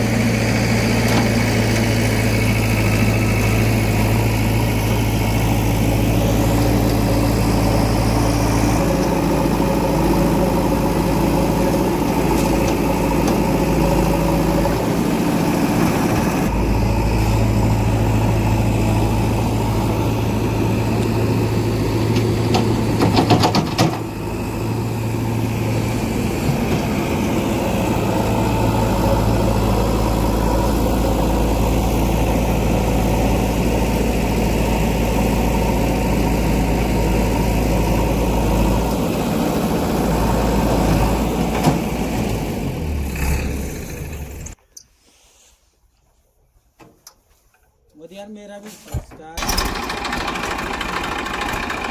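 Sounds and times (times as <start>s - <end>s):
heavy diesel engine running: 0.0s - 44.6s, 49.4s - 51.9s
clattering knocks: 22.0s - 24.4s.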